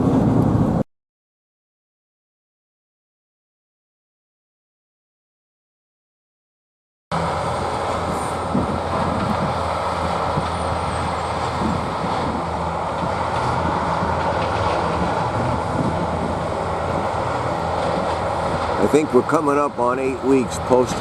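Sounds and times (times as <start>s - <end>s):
vehicle engine and road noise: 0.0s - 0.8s, 7.1s - 21.0s.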